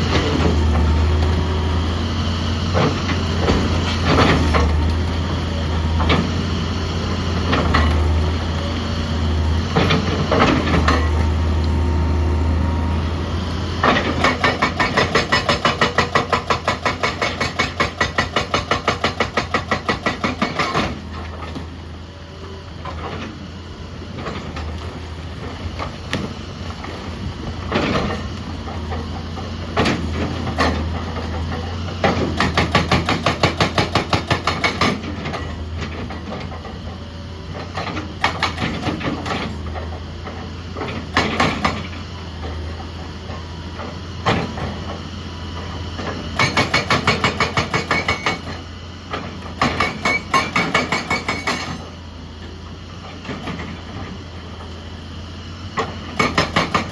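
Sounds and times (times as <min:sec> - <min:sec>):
excavator diesel engine running: 0:00.0 - 0:56.9
hydraulic breaker hammering rock: 0:13.8 - 0:21.7, 0:26.9 - 0:37.0, 0:37.6 - 0:52.0, 0:55.8 - 0:56.9.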